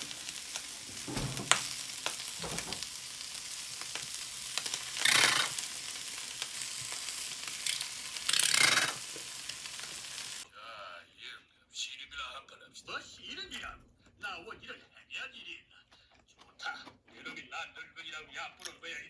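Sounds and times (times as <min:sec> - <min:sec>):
food sizzling in a frying pan: 0:00.0 - 0:10.5.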